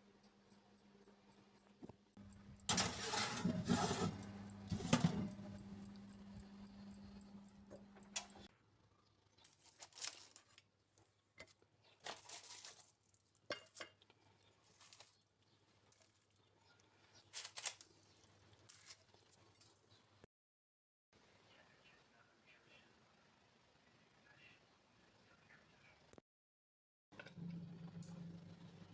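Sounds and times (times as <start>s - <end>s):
low steady hum: 2.2s - 8.5s
clattering and scraping: 2.6s - 5.6s.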